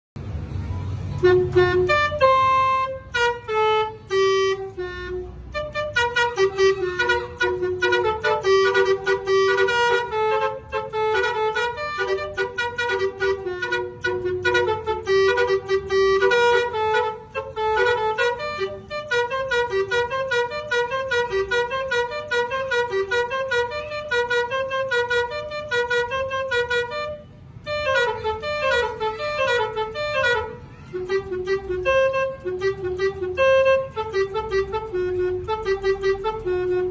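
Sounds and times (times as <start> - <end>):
multi-tone vehicle melody horn: 0.6 - 36.9.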